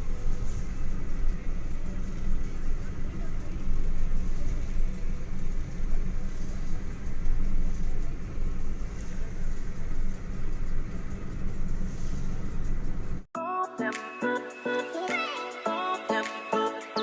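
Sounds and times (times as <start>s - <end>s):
road and engine noise inside car: 0.0s - 13.3s
background music: 13.4s - 17.0s.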